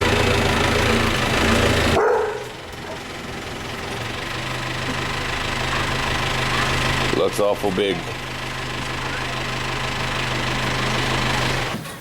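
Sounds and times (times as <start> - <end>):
engine running: 0.0 - 12.0
dog barking: 2.0 - 3.1.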